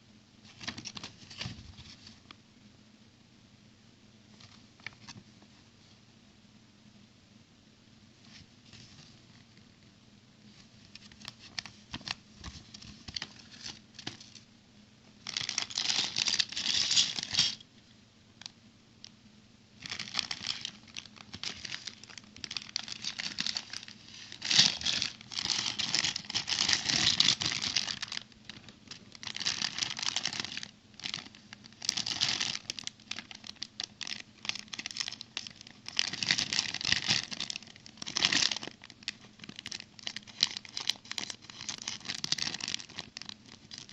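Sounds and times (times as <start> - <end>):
packaging crinkling and tearing: 15.2 - 17.6, 19.8 - 43.9.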